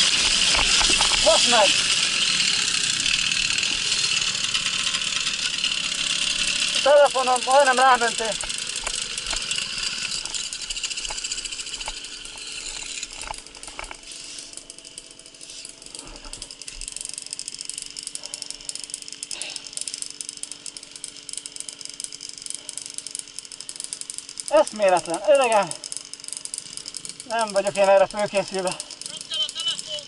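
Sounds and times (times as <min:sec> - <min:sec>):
knocks and clatter: 0:00.0 - 0:01.9
moped two-stroke engine running: 0:00.0 - 0:30.0.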